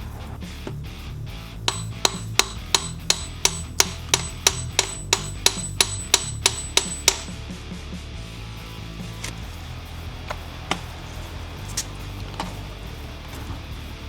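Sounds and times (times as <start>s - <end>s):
hammer striking metal: 1.7s - 7.4s.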